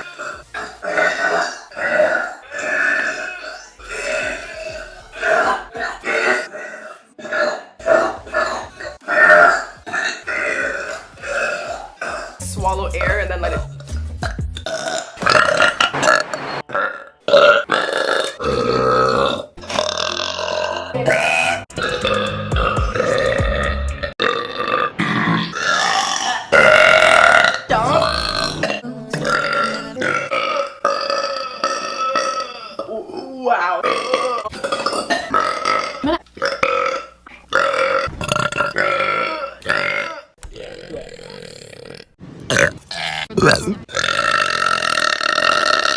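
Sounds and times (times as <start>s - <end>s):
woman belching: 14.3s - 45.9s.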